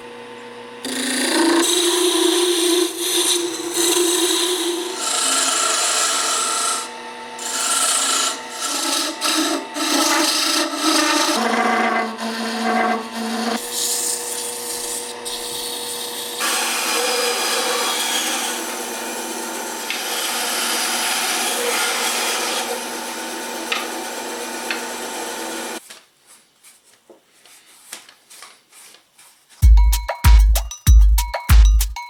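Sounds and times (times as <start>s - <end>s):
lathe humming: 0.8s - 25.8s
wood scraping on a lathe: 0.8s - 25.8s.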